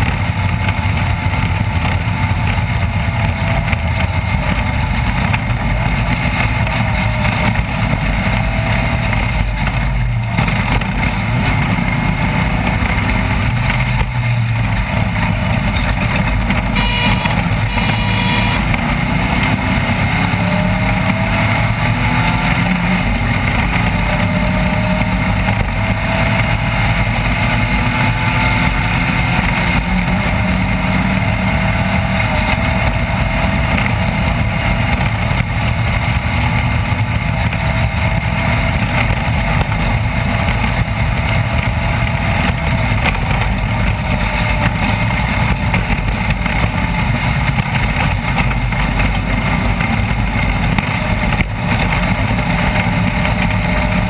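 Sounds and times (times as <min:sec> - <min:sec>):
loud rushing noise: 0:00.0 - 0:29.1
race vehicle engine revving: 0:00.0 - 0:54.0.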